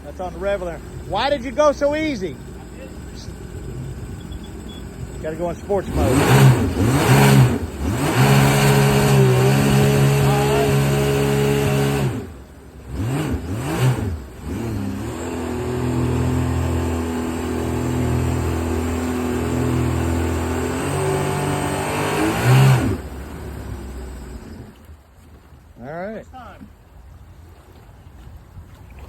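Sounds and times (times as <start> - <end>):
engine revving at full throttle: 5.1 - 24.7.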